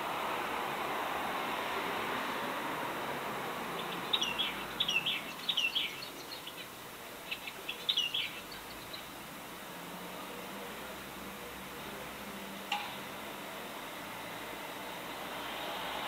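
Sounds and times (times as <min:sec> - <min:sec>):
steady background hiss: 0:00.0 - 0:16.0
birds chirping: 0:03.7 - 0:09.3.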